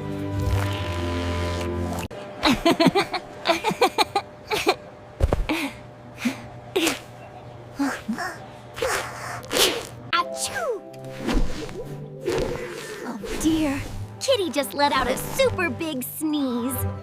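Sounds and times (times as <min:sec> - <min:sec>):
cartoon kitten sniffles and sneeze: 0:08.8 - 0:09.9
background music: 0:10.1 - 0:17.0.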